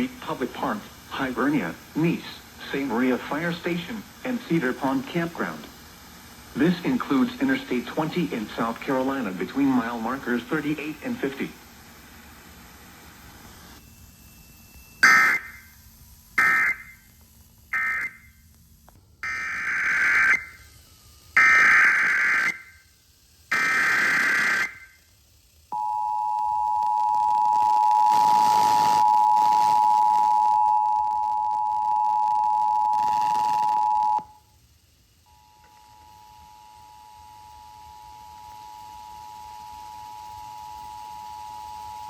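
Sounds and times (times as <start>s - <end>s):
screeching data bursts: 15.0s - 15.8s, 16.4s - 17.1s, 17.7s - 18.4s, 19.2s - 20.7s, 21.3s - 22.9s, 23.5s - 25.1s.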